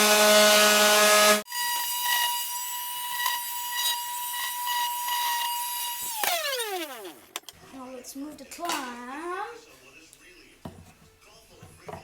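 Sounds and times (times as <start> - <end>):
power tool motor humming: 0.0 - 7.5.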